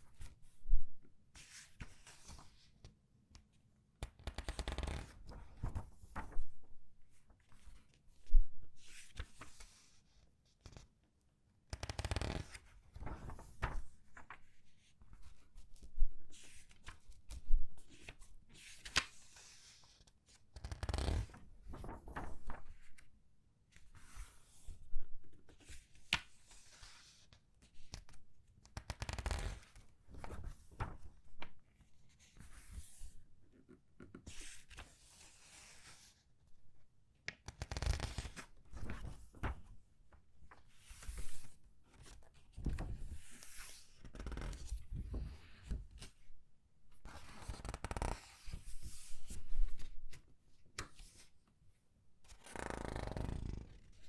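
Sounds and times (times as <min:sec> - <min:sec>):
page turning rustle: 0:04.4 - 0:06.5, 0:12.2 - 0:14.6, 0:20.7 - 0:23.0, 0:29.2 - 0:31.6, 0:37.7 - 0:39.8, 0:40.5 - 0:46.1
paper pages crinkling and rustling: 0:04.8 - 0:06.4, 0:12.2 - 0:15.7, 0:21.1 - 0:23.0, 0:29.2 - 0:31.6, 0:37.8 - 0:39.8.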